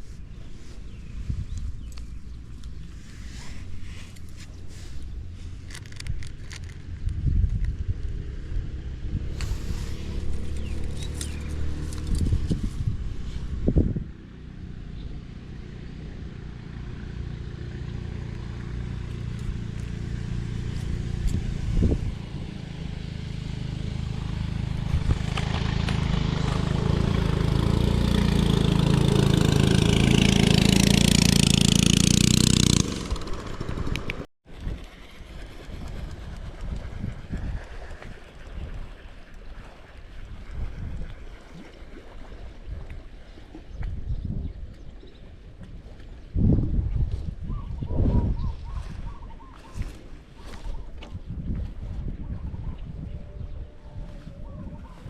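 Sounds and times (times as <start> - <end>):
wind noise: 0.0 - 15.2, 18.5 - 55.0
small engine running: 8.1 - 13.5, 14.2 - 41.0.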